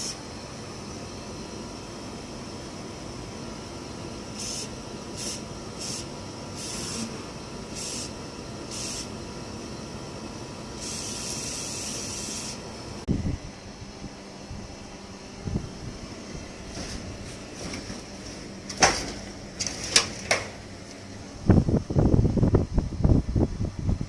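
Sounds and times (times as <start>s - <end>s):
hissing spray bursts: 4.3s - 9.2s, 10.8s - 12.6s
air conditioner whooshing: 10.8s - 24.0s.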